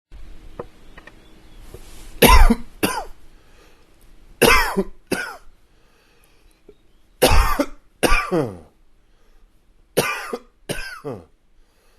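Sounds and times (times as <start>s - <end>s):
man coughing: 2.2s - 3.1s, 4.4s - 5.5s, 7.2s - 8.8s, 10.0s - 11.4s.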